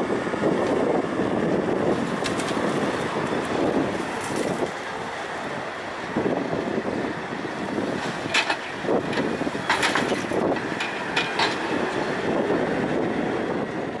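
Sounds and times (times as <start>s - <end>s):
backhoe engine running: 0.0s - 14.0s
sharp knocks and rattles: 8.0s - 11.8s.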